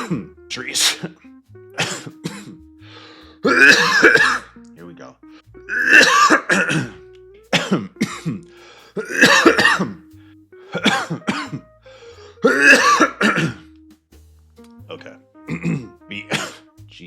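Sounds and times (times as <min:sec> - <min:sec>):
person coughing: 0:00.0 - 0:01.2, 0:01.8 - 0:02.6, 0:03.4 - 0:04.5, 0:05.7 - 0:10.0, 0:10.7 - 0:11.6, 0:12.4 - 0:13.6, 0:15.5 - 0:16.7.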